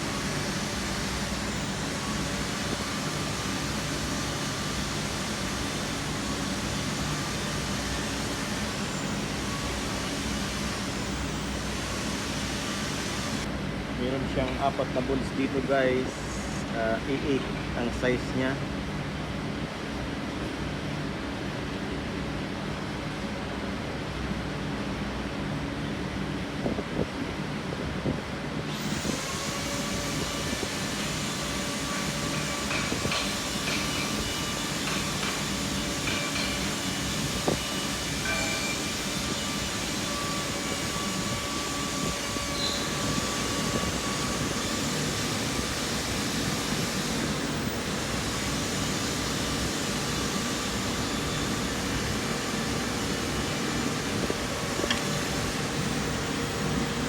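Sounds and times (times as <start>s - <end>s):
hiss: 28.8s - 54.0s.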